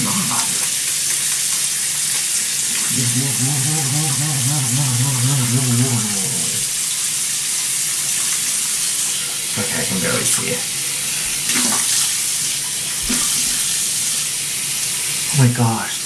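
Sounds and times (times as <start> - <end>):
tap water running into sink: 0.0 - 15.5
person humming: 2.7 - 6.8.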